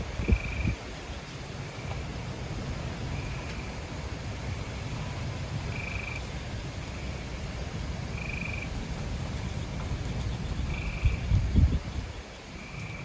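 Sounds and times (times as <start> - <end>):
frogs trilling: 0.0 - 2.0, 5.7 - 6.3, 7.9 - 13.0.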